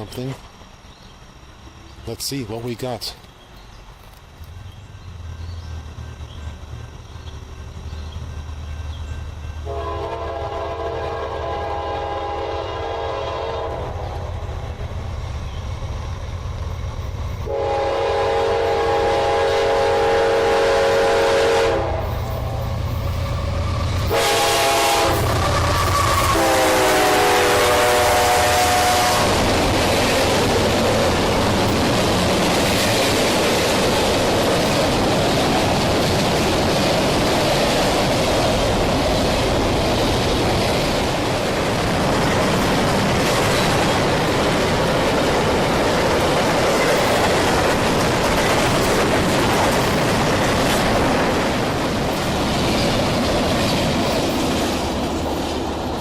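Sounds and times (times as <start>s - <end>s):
train rumbling on rails: 0.0s - 56.0s
locomotive horn blasts: 9.6s - 13.9s, 17.4s - 22.2s, 24.1s - 25.4s, 26.1s - 29.4s.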